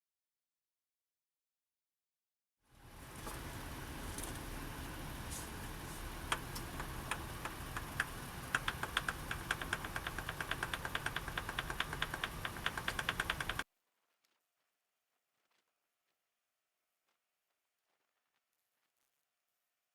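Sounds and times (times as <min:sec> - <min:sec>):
diesel truck engine running: 0:02.7 - 0:13.6
sharp regular ticking: 0:06.1 - 0:13.6.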